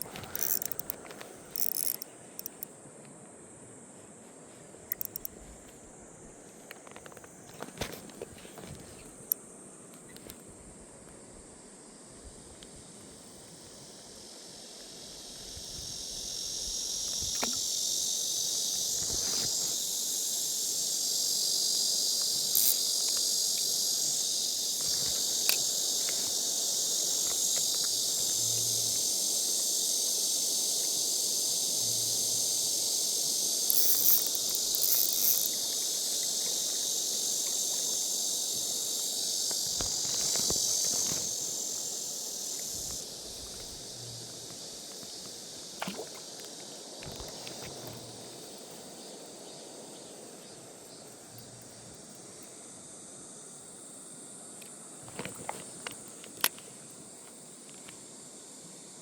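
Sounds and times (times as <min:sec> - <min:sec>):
sharp clicks: 0:00.0 - 0:02.7, 0:04.9 - 0:05.3
insects droning: 0:00.0 - 0:59.0.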